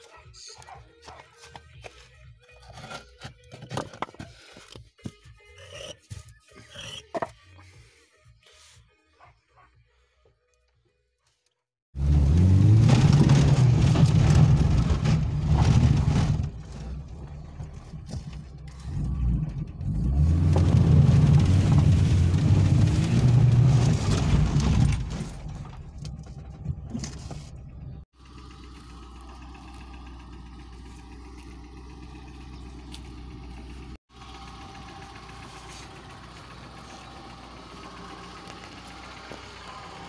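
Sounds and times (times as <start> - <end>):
car engine running: 12.0 - 40.0.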